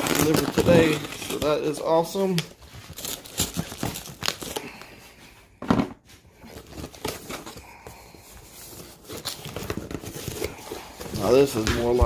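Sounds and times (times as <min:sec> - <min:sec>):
cardboard box rustling and crinkling: 0:00.0 - 0:04.6, 0:06.4 - 0:07.6, 0:08.4 - 0:12.0.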